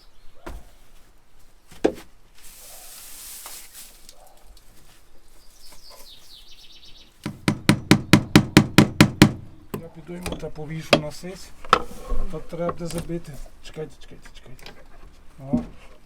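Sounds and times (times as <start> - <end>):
rustling: 0.4 - 7.2, 10.4 - 13.8
hammer driving a nail: 7.2 - 9.8.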